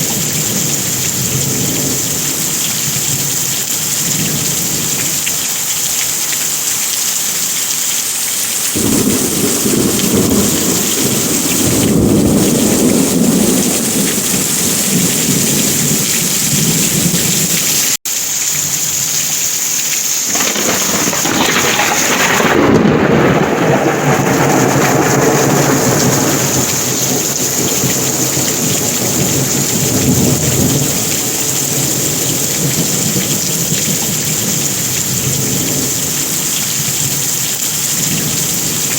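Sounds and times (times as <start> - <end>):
heavy rain: 0.0 - 38.9
low rolls of thunder: 8.8 - 17.7, 20.3 - 36.2.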